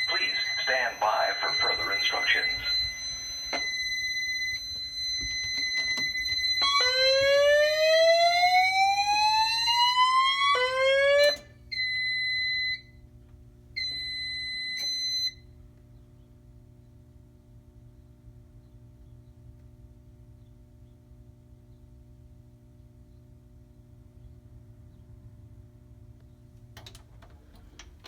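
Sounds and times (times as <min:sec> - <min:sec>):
alarm whoop tone: 0:00.0 - 0:12.8
steady high alarm tone: 0:00.0 - 0:13.0, 0:13.8 - 0:15.4.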